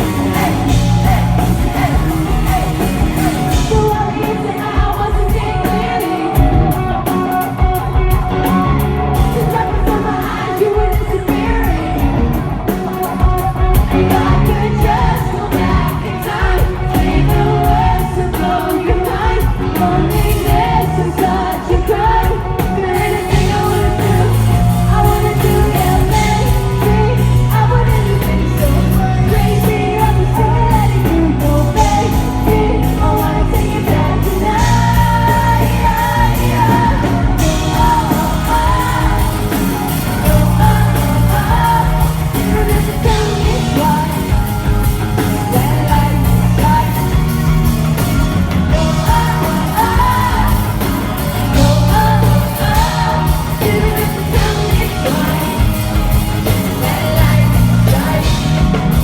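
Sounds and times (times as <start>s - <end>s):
lead vocals singing: 0.0s - 59.0s
pop-rock band playing live: 0.0s - 59.0s.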